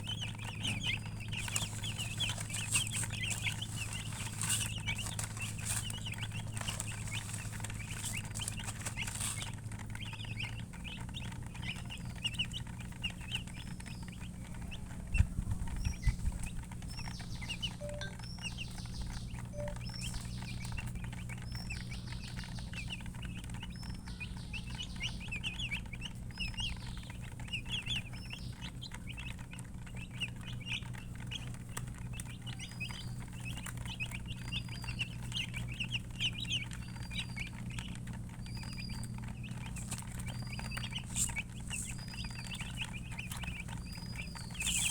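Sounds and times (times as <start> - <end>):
baby chicks peeping: 0.0 - 44.9
low hum: 17.7 - 18.5, 19.4 - 20.4.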